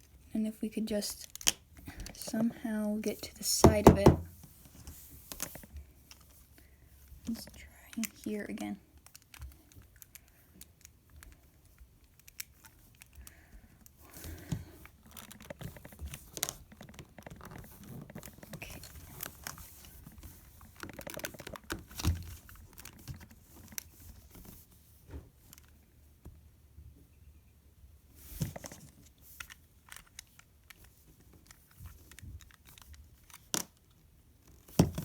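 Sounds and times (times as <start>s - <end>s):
sharp knock: 3.6s - 4.3s.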